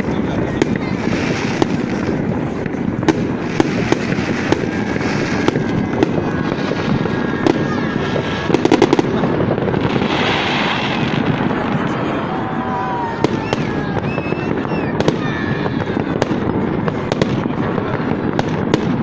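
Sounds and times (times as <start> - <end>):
fireworks booming: 0.0 - 19.0
sharp firework cracks: 0.0 - 19.0.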